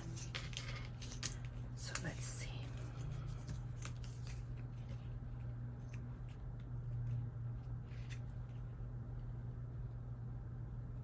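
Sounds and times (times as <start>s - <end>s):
paper rustling and clicks: 0.0s - 2.1s
steady low hum: 0.0s - 11.0s.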